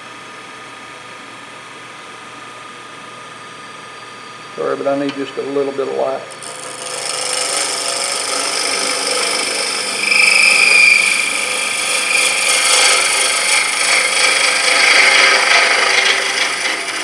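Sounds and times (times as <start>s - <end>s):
high whine: 4.4s - 17.0s
wood lathe tool scraping hiss: 4.5s - 17.0s.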